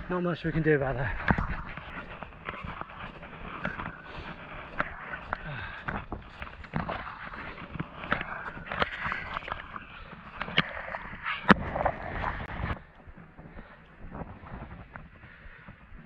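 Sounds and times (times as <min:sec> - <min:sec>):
boots crunching through snow: 0:00.0 - 0:12.3
faint wind: 0:00.0 - 0:16.0.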